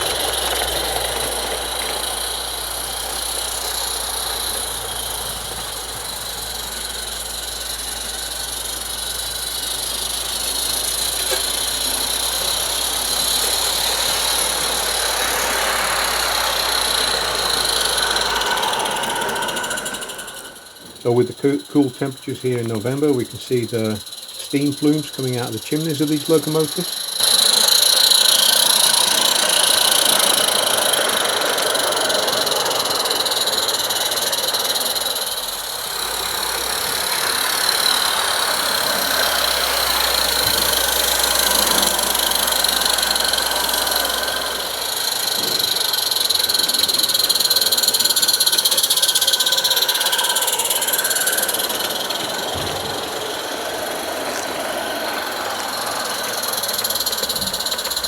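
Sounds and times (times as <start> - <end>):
model steam locomotive running: 0.0 - 58.0.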